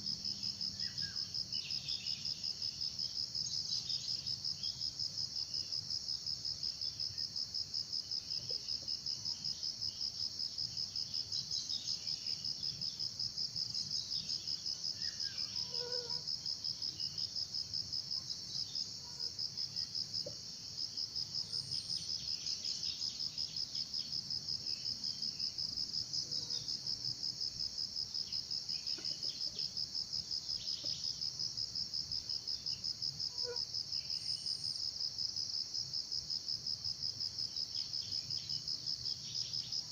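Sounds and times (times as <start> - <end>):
high-pitched insect trill: 10.7 - 17.6, 28.1 - 35.0.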